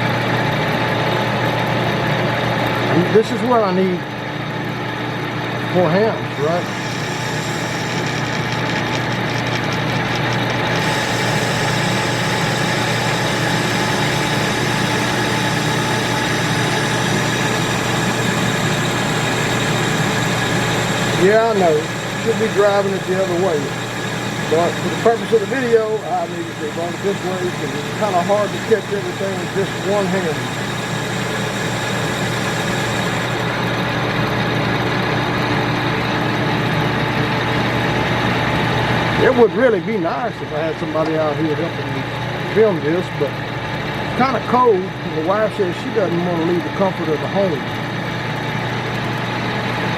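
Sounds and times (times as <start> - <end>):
lathe running: 4.6 - 49.9
electrical humming: 5.5 - 36.4
high hiss: 10.9 - 33.4.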